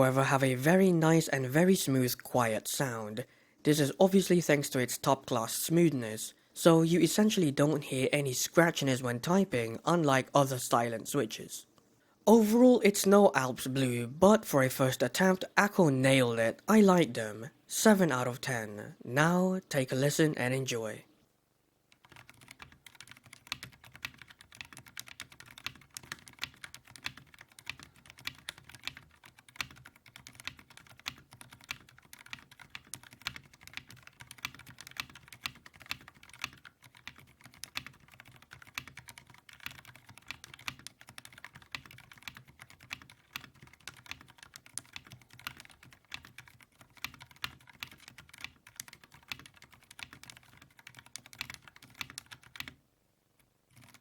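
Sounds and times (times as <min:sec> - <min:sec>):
person speaking: 0:00.0 - 0:21.2
fast typing on a keyboard: 0:21.9 - 0:52.8, 0:53.7 - 0:54.0.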